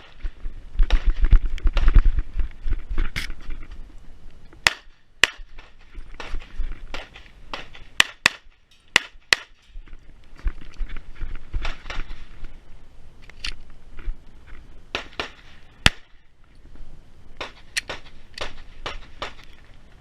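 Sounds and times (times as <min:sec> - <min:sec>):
pistol shots: 0:04.6 - 0:09.6, 0:14.9 - 0:16.1, 0:17.4 - 0:19.4.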